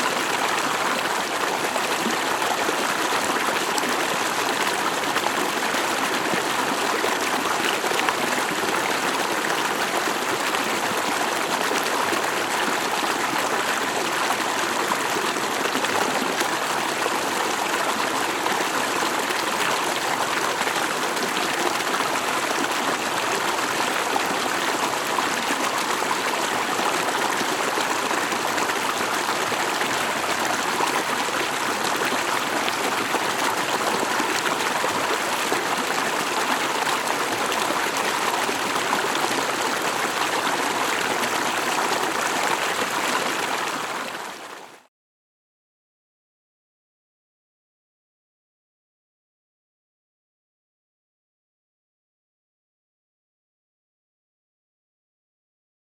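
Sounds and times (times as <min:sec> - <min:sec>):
stream flowing over rocks: 0:00.0 - 0:44.8.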